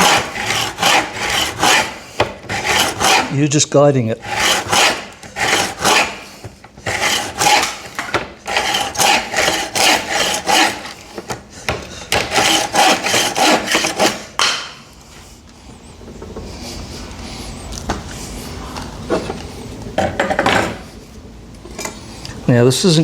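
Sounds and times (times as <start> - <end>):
hand saw cutting wood: 0.0 - 3.4, 4.2 - 11.4, 12.1 - 14.6.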